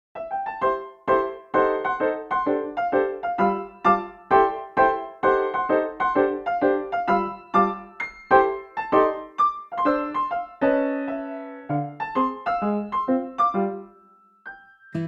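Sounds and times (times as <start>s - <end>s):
light piano tune: 0.2s - 15.0s.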